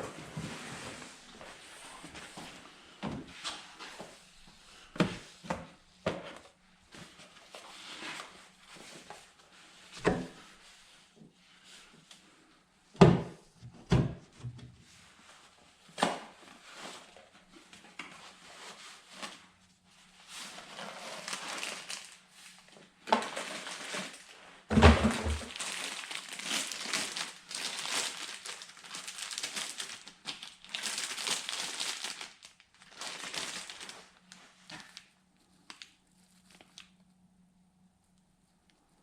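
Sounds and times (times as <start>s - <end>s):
wrapping material crinkling: 18.2s - 37.2s.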